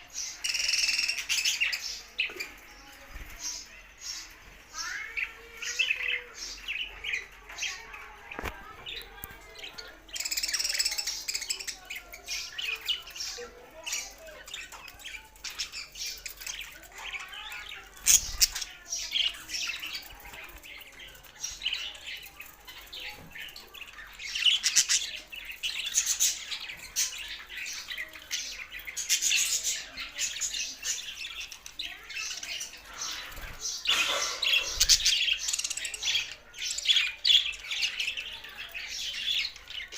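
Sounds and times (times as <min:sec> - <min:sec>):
budgerigars chattering and squawking: 0:21.2 - 0:39.9.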